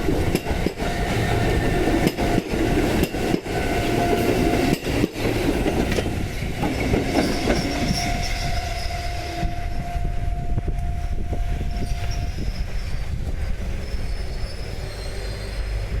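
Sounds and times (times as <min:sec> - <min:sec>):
wheels clacking over rail joints: 0:00.0 - 0:08.4
electric train passing slowly: 0:00.0 - 0:16.0
wheel squeal: 0:07.1 - 0:09.6, 0:11.6 - 0:16.0.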